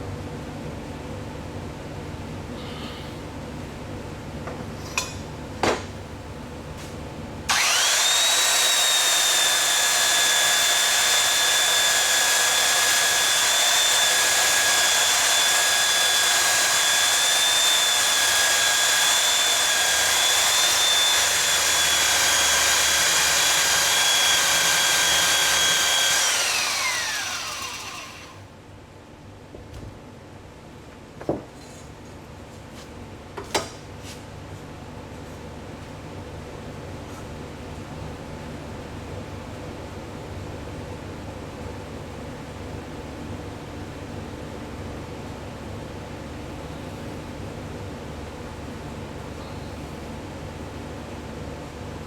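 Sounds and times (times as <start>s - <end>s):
belt sander whining: 7.5s - 28.4s.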